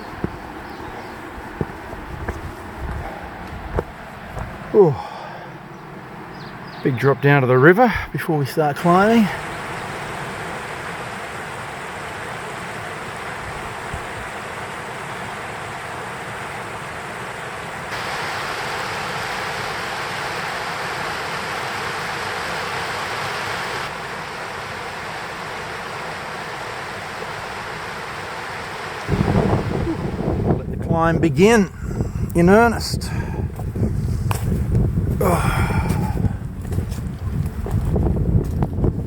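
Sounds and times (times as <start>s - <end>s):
river rushing: 8.8s - 30.6s.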